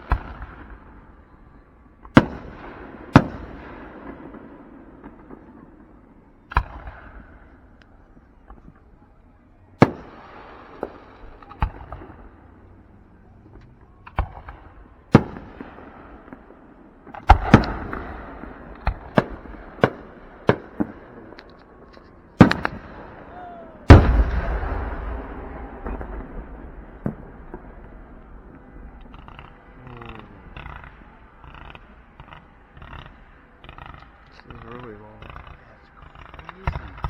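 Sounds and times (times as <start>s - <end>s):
fireworks bursting with sharp bangs: 0.0s - 37.0s.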